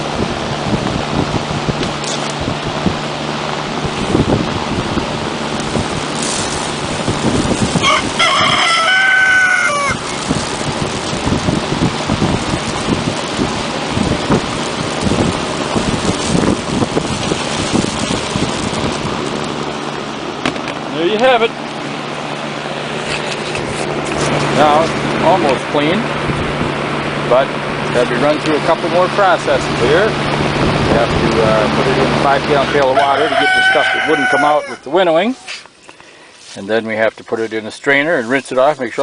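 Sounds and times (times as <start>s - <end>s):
motor hum: 0.0s - 33.2s
rooster crowing: 7.8s - 10.2s, 32.8s - 35.0s.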